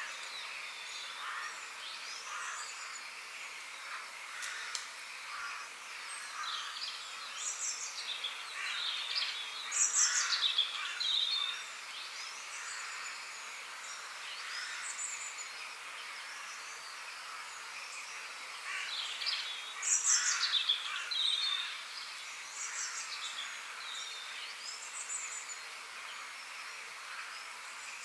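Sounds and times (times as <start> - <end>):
steady hiss: 0.0 - 28.0.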